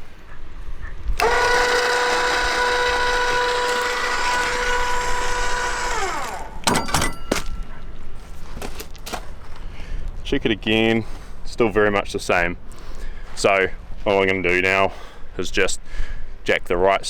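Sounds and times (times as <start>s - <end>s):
electric motor whining: 1.2s - 7.6s
sharp clicks: 1.2s - 7.7s.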